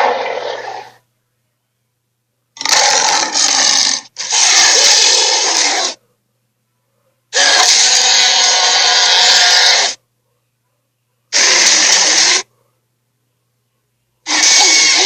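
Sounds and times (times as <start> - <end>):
harsh hissing creature cries: 0.0 - 1.0, 2.6 - 6.0, 7.4 - 10.0, 11.3 - 12.5, 14.3 - 15.0.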